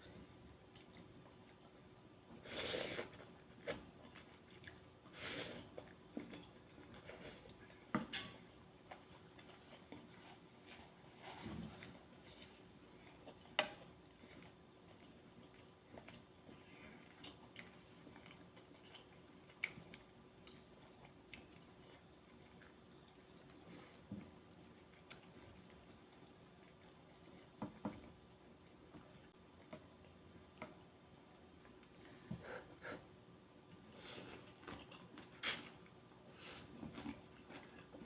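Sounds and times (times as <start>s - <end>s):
chewing and mouth sounds: 0.0s - 2.4s, 3.0s - 10.8s, 11.9s - 32.2s, 33.0s - 38.0s.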